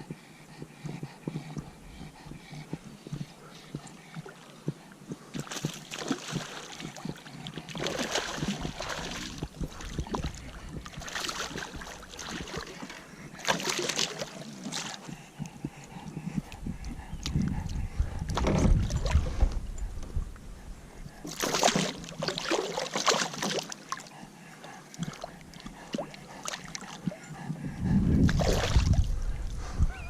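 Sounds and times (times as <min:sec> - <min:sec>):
paddle strokes splashing water: 0:03.4 - 0:15.6, 0:21.2 - 0:24.1.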